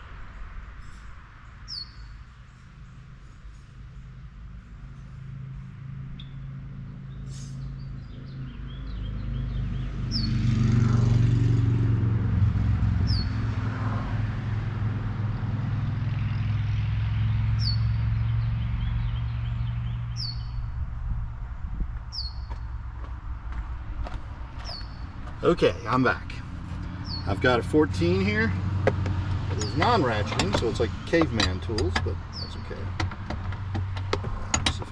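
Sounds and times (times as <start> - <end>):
low engine hum: 0.0 - 34.9
bird chirping: 1.4 - 4.1, 6.2 - 10.4, 17.6 - 20.7, 22.1 - 22.7, 24.6 - 32.9.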